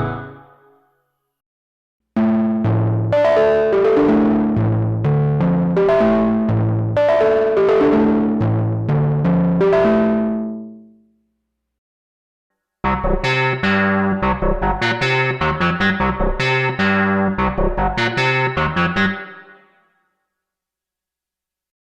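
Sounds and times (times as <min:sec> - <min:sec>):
synthesizer melody: 0:12.9 - 0:19.6.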